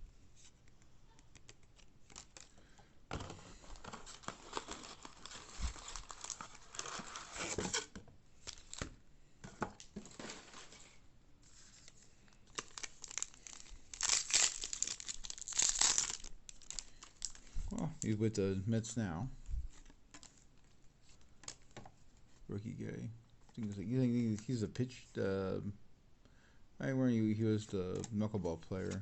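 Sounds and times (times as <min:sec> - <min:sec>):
foil wrapper tearing and crinkling: 0:03.8 - 0:07.7, 0:12.4 - 0:18.1.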